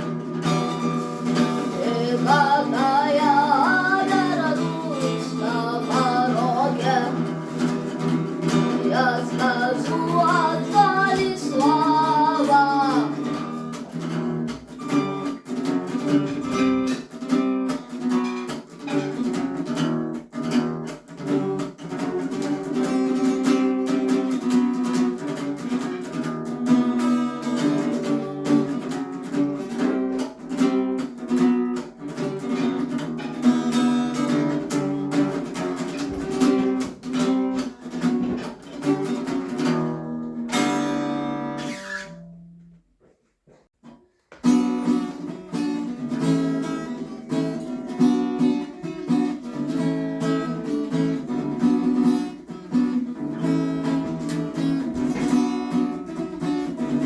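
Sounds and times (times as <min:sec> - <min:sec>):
acoustic guitar strumming: 0:00.0 - 0:43.2, 0:43.8 - 0:57.0
boy singing: 0:01.4 - 0:13.7.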